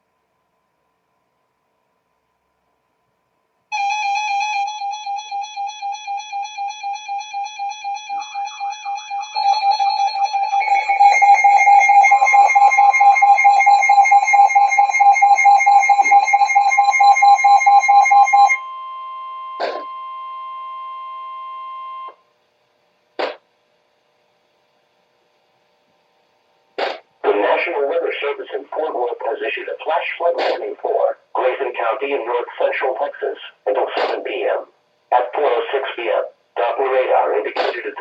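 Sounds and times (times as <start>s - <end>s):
electronic alarm tones: 3.7s - 22.2s.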